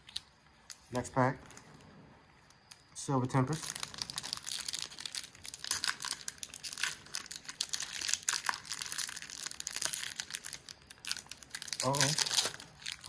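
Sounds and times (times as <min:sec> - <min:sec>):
foil wrapper crinkling and tearing: 0:03.5 - 0:13.0.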